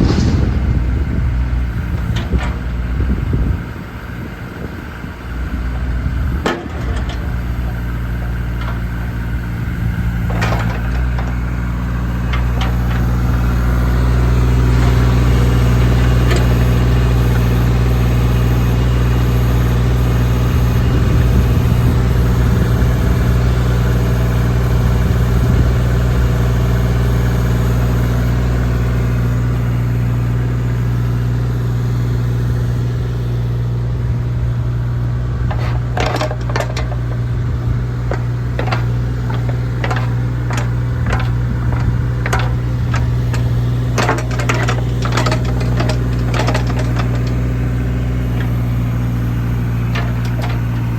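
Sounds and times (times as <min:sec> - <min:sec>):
excavator diesel engine running: 0:00.0 - 0:50.9
sharp knocks or clicks: 0:38.1 - 0:47.4.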